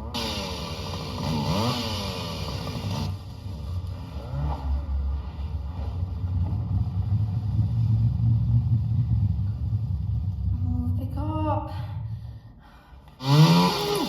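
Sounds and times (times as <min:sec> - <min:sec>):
low bass rumble: 0:03.0 - 0:12.6.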